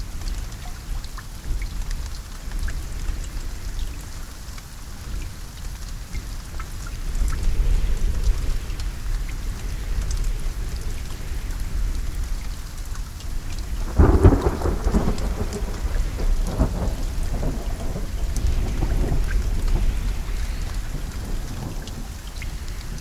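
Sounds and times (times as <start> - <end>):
low rumble of thunder: 0.0 - 23.0
rain falling: 0.0 - 23.0
thunder peal: 13.8 - 22.2.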